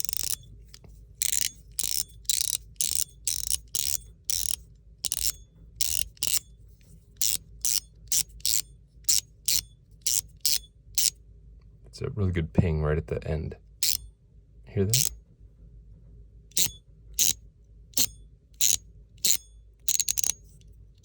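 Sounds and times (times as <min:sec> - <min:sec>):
metal slider detent clicks: 0:00.0 - 0:00.4, 0:01.2 - 0:06.4, 0:07.2 - 0:11.1, 0:13.8 - 0:14.0, 0:16.5 - 0:17.4, 0:18.0 - 0:20.4.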